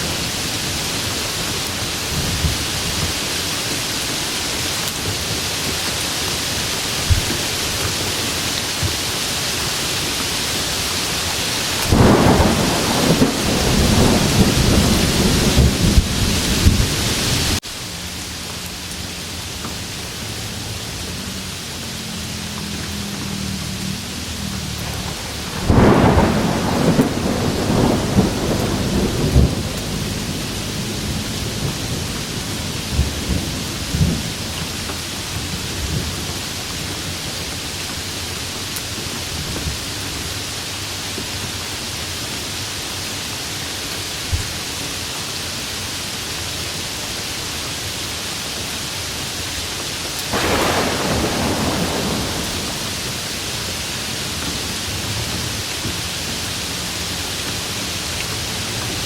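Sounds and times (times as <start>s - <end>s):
steady rain falling: 0.0s - 59.0s
thunder rumbling: 10.5s - 17.6s, 23.3s - 37.1s, 50.3s - 54.6s.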